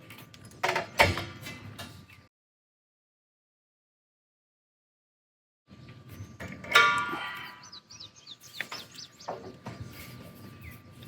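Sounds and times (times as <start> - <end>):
small birds chirping: 7.3 - 11.0.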